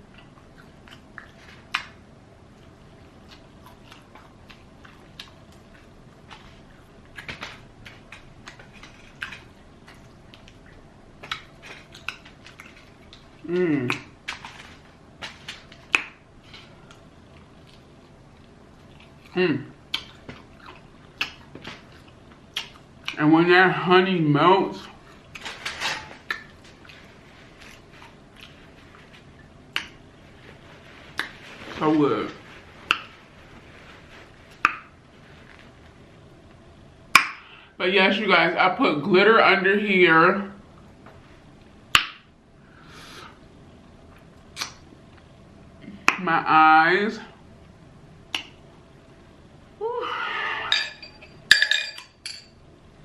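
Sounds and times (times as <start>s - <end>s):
crunchy chewing: 0.0s - 23.2s, 24.8s - 31.7s
wet mouth clicks: 44.5s - 44.8s, 48.3s - 48.6s.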